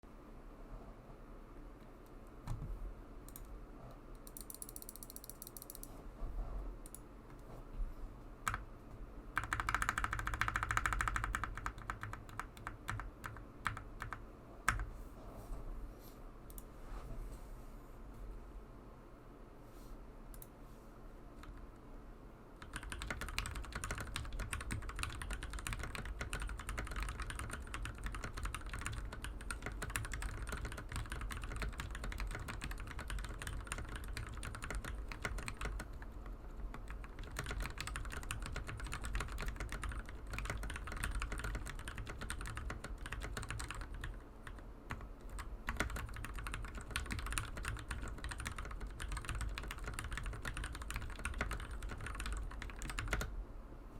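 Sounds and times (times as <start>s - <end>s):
mechanical keyboard typing: 4.2s - 5.9s, 8.4s - 8.6s, 9.4s - 14.9s, 22.6s - 53.3s.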